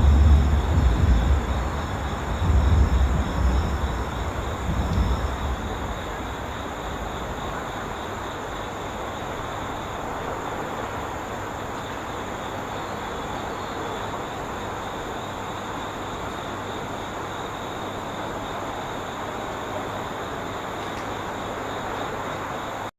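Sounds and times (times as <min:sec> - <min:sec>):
train rumble: 0:00.0 - 0:17.0
steady hiss: 0:00.0 - 0:22.9.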